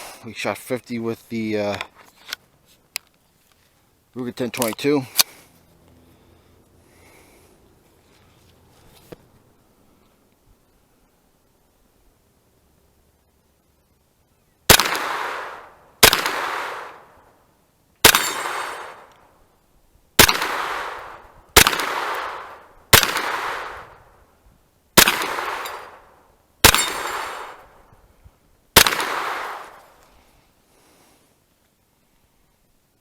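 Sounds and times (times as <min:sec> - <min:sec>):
gunshots with long echo: 0:14.7 - 0:17.3, 0:18.0 - 0:19.2, 0:20.2 - 0:24.1, 0:25.0 - 0:27.9, 0:28.8 - 0:30.0.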